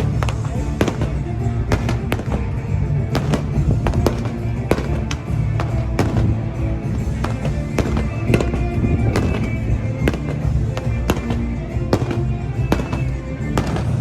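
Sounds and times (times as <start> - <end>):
music: 0.0 - 14.0
sharp cracks and knocks: 3.2 - 14.0.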